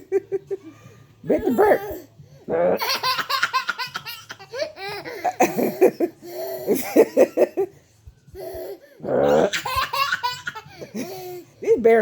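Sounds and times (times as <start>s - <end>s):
baby laughing: 2.8s - 7.4s, 8.4s - 11.4s.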